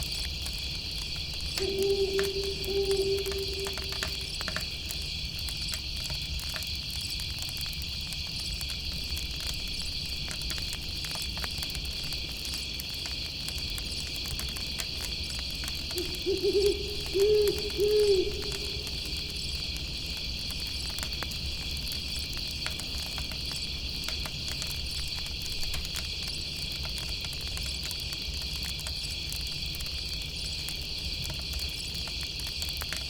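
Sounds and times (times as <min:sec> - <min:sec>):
campfire crackle: 0:00.0 - 0:33.0
crickets chirring: 0:00.0 - 0:33.0
owl hooting: 0:01.6 - 0:04.8, 0:15.9 - 0:19.8.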